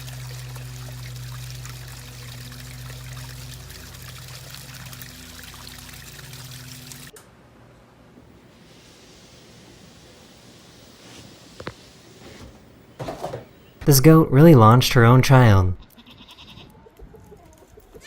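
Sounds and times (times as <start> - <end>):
running water trickling: 0.0 - 7.1
low hum: 0.0 - 8.3.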